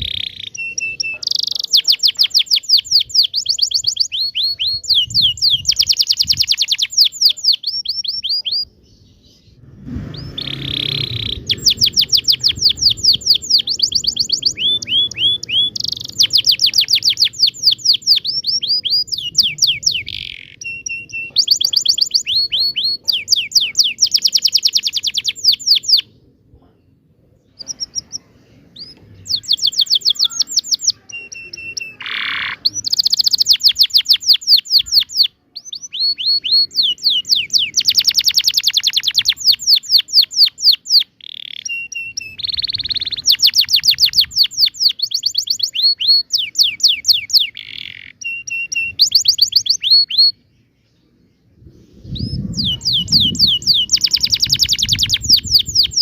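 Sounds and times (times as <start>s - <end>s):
canary singing trills: 0.0s - 50.8s, 52.0s - 56.0s.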